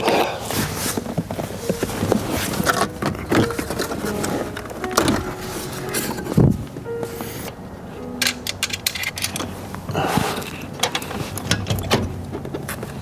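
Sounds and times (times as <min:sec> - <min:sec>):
scraping rustle: 0:00.1 - 0:07.5.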